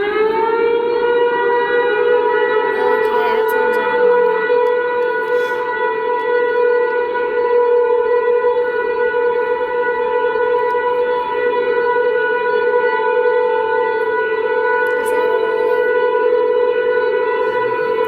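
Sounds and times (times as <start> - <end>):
steady siren tone: 0.0 - 18.0.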